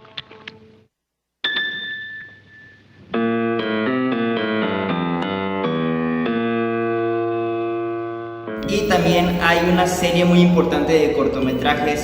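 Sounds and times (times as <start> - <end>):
loud piano chords: 3.1 - 12.0.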